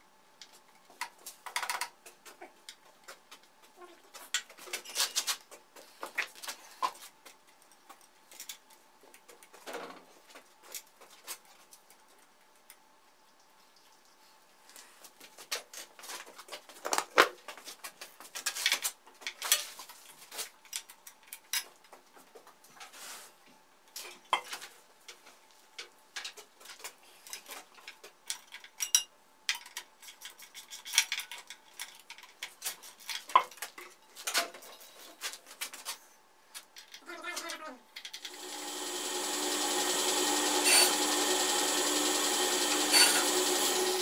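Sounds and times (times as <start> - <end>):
electric motor spinning up: 38.3 - 44.0.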